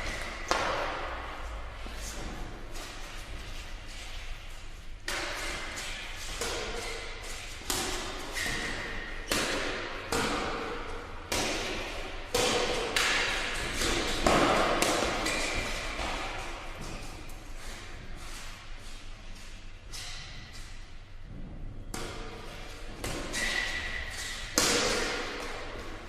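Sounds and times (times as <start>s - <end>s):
badminton rackets hitting shuttlecock: 0.0s - 1.2s, 5.1s - 17.2s, 21.9s - 26.0s.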